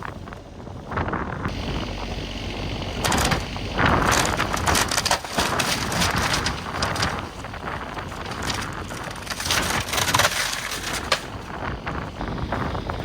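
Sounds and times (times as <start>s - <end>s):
low engine hum: 0.0s - 13.0s
wooden walls cracking and splintering: 3.0s - 12.0s.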